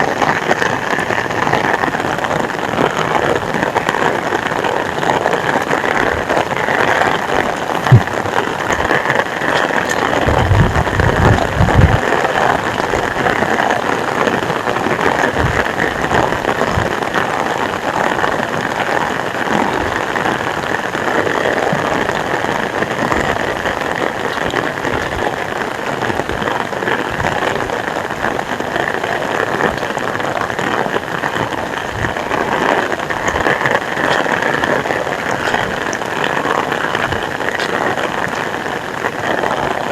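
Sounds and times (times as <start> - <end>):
heavy rain falling: 0.0 - 39.9
low rumble: 7.8 - 8.9, 10.2 - 12.0.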